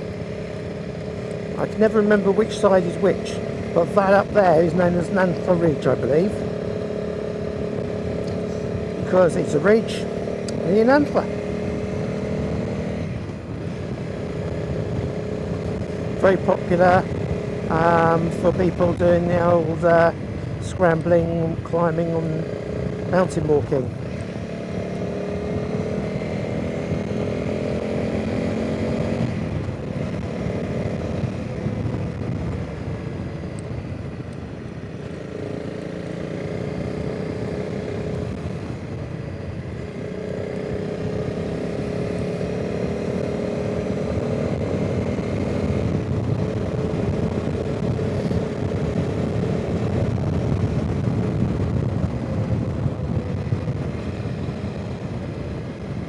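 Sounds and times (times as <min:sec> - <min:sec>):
motorcycle engine running: 0:00.0 - 0:56.0
wind noise on microphone: 0:25.1 - 0:34.4, 0:42.7 - 0:56.0.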